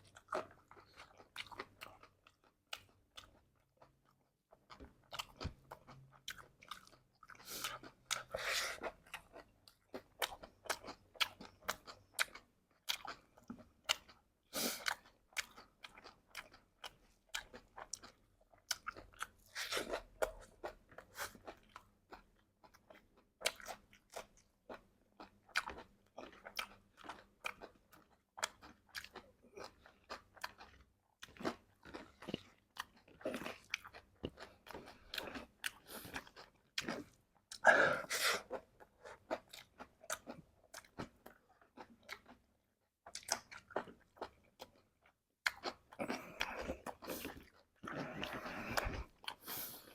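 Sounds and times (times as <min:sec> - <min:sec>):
person chewing crunchy food: 0:00.0 - 0:49.9.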